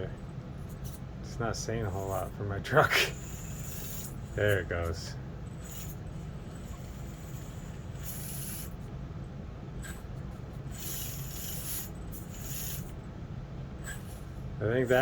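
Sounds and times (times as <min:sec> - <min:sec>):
toy car motor whirring: 0:01.8 - 0:08.8, 0:09.8 - 0:13.0, 0:13.8 - 0:15.0.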